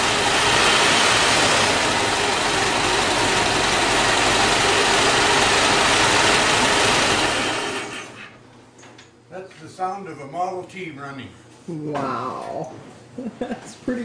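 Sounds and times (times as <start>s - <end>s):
car engine running: 0.0s - 8.4s.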